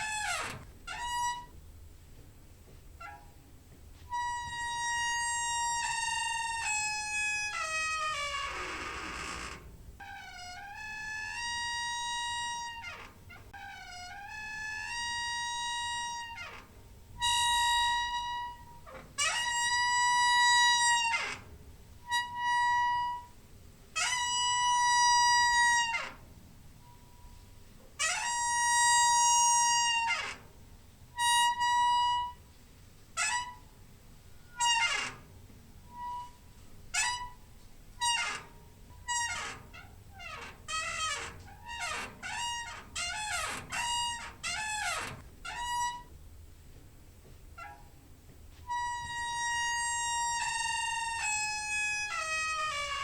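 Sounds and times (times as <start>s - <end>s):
squeaking door hinge: 0.0s - 1.6s, 3.0s - 3.4s, 4.1s - 23.4s, 24.0s - 32.5s, 33.1s - 46.2s, 47.5s - 48.0s, 48.6s - 53.0s.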